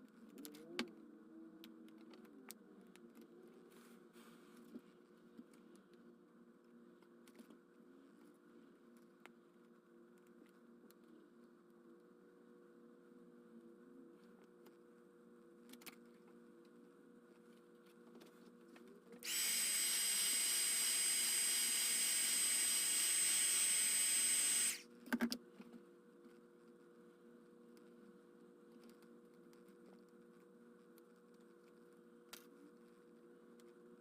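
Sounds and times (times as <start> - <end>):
electric tool high whine: 19.2 - 24.8.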